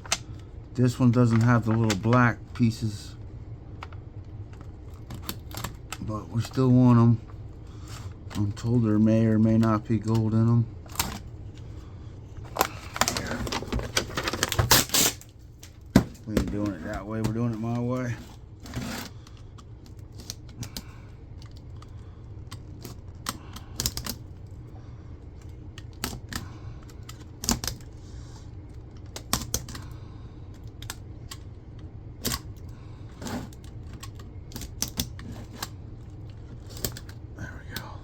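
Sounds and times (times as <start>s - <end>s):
steady low hum: 0.0s - 38.0s
plastic parts clicking and snapping: 3.8s - 6.6s, 19.2s - 24.4s, 25.4s - 27.9s, 28.9s - 32.7s, 33.5s - 37.9s.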